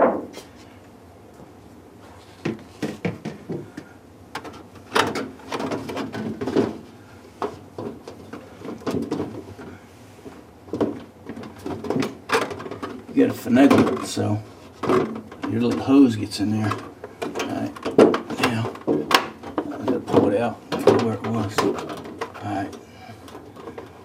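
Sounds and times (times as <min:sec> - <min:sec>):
fan cover knocking and scraping: 0:02.3 - 0:23.9.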